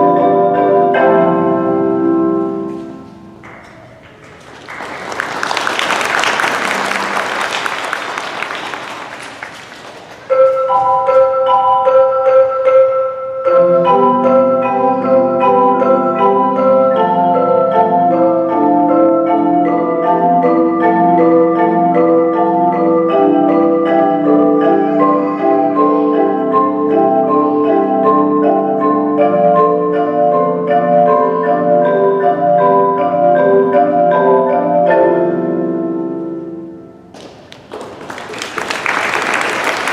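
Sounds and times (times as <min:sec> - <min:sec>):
mallet percussion ensemble playing: 0:00.0 - 0:04.0, 0:10.3 - 0:37.1
applause: 0:03.4 - 0:10.3, 0:37.2 - 0:39.9.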